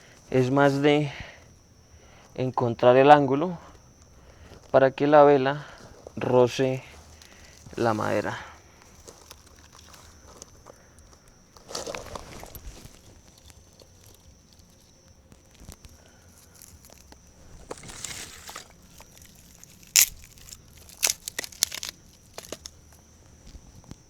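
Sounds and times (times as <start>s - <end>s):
sticks rustling: 5.6s - 23.1s.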